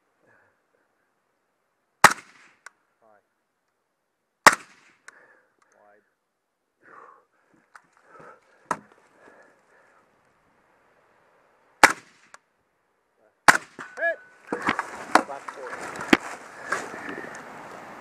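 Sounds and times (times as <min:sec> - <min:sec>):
gunshots: 0:02.0 - 0:02.7, 0:04.4 - 0:05.0, 0:11.8 - 0:12.4, 0:13.4 - 0:14.0
faint shuffling: 0:14.2 - 0:18.0.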